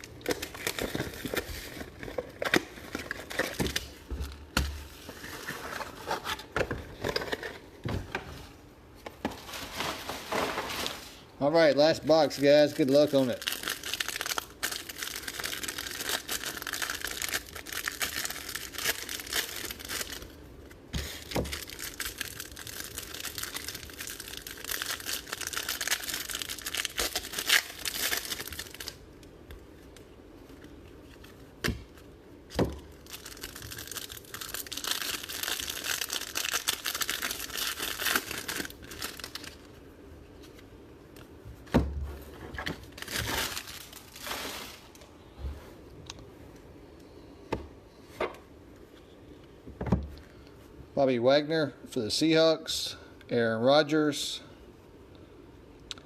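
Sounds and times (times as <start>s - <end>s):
plastic wrapping tearing and crinkling: 0.0s - 6.4s, 9.4s - 29.1s, 32.6s - 39.7s, 42.6s - 45.1s.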